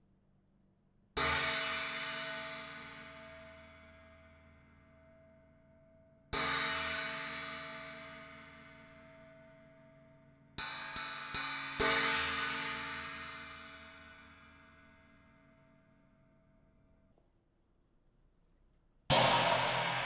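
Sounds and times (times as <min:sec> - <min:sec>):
cymbal struck and ringing: 0:19.1 - 0:20.0.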